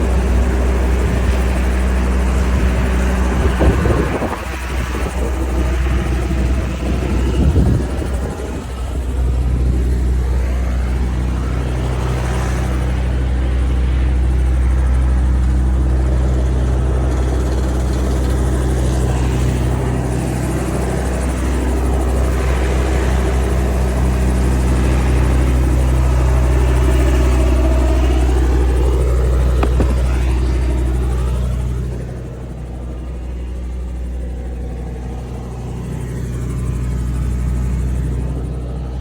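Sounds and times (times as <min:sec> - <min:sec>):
helicopter engine and rotor rumble: 0:00.0 - 0:39.0.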